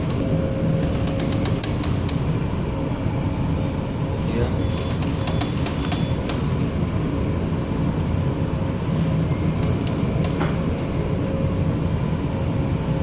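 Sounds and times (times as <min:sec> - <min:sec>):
ship engines droning: 0:00.0 - 0:13.0
sharp clicks: 0:00.8 - 0:02.2, 0:04.7 - 0:06.4.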